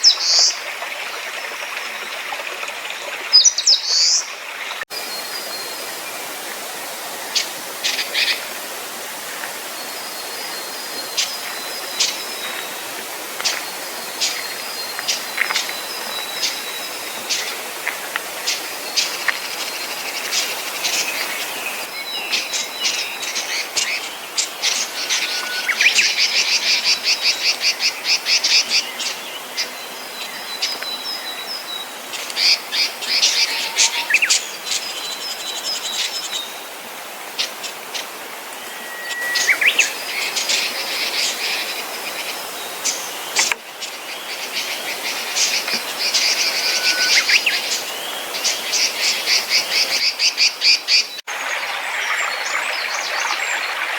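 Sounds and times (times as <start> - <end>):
songbirds trilling and twittering: 3.3 - 53.9
thin whistled bird notes: 20.3 - 27.5, 38.6 - 43.6, 44.2 - 51.2.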